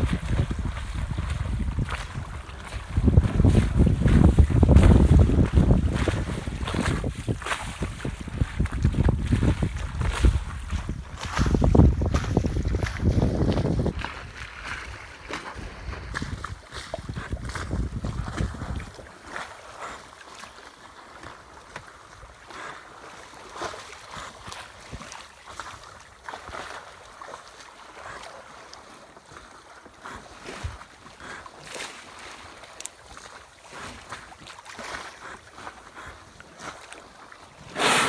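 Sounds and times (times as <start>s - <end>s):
wind on microphone: 0.0s - 19.1s
water lapping against hull: 0.0s - 38.0s.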